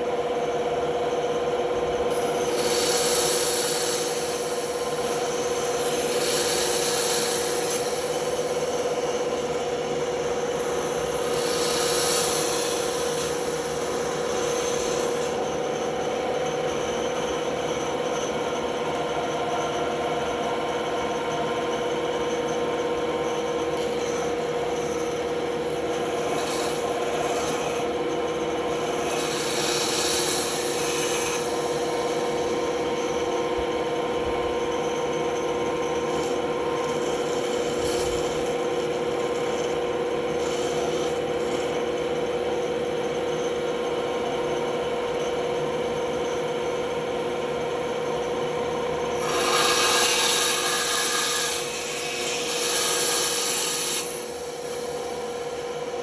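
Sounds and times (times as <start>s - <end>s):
band saw running: 0.0s - 56.0s
saw blade rasping through wood: 2.1s - 18.3s, 23.2s - 33.5s, 34.7s - 41.9s, 49.1s - 55.0s.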